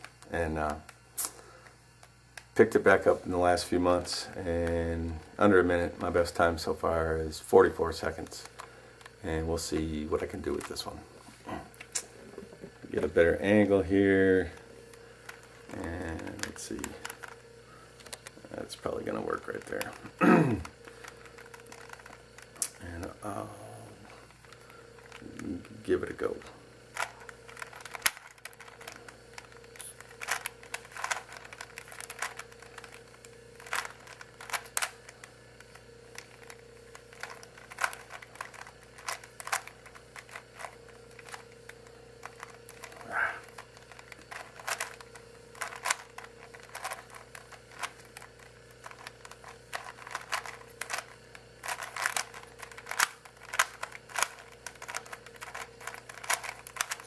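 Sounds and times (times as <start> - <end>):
low electrical hum: 0.0 - 57.0
puzzle cube layers clicking: 27.0 - 35.2, 42.3 - 57.0.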